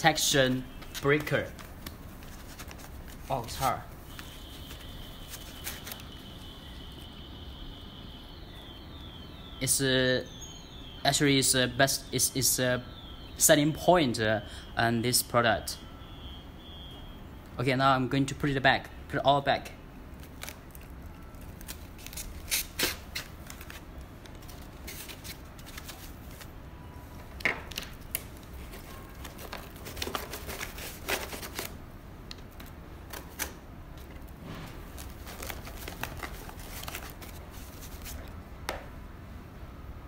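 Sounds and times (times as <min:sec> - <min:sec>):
packaging rustling: 0:00.2 - 0:06.5, 0:20.1 - 0:38.4.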